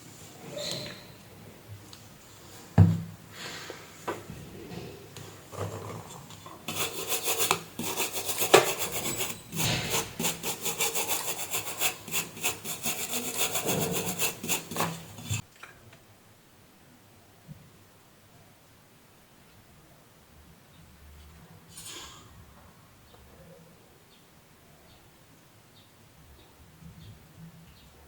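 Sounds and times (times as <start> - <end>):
rapid rasping strokes: 6.7 - 15.4.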